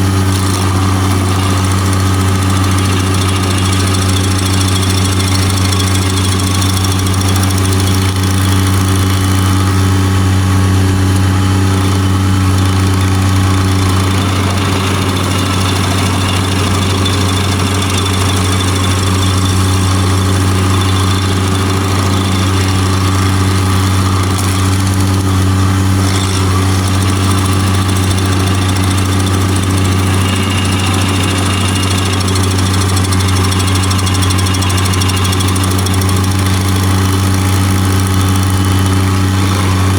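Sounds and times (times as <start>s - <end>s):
skid steer engine running under load: 0.0s - 39.9s
stump grinder cutting wood: 0.0s - 39.9s.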